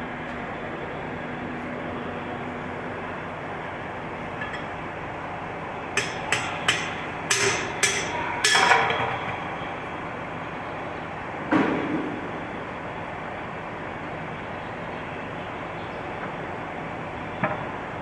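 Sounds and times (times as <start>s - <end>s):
steady background noise: 0.0s - 18.0s
hammer striking metal: 6.0s - 9.3s.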